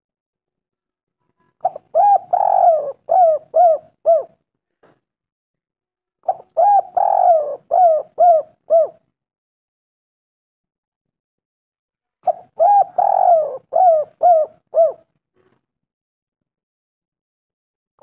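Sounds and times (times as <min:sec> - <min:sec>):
dove cooing: 0:01.6 - 0:04.4, 0:06.2 - 0:09.0, 0:12.2 - 0:15.1.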